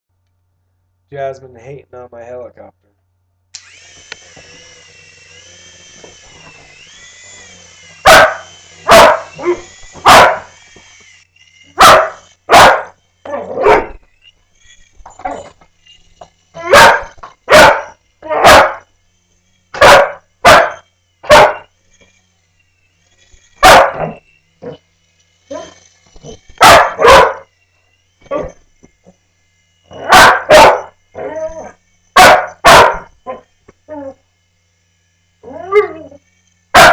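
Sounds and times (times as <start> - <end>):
small electric motor whining: 3.5 - 36.9
dog barking: 8.0 - 10.5, 11.8 - 14.0, 16.6 - 18.9, 19.8 - 21.7, 23.6 - 24.8, 26.6 - 27.5, 30.0 - 33.4.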